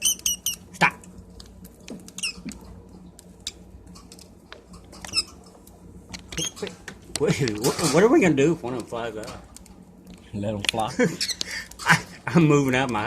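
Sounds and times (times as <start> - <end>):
light clicks and taps: 8.6 - 11.6.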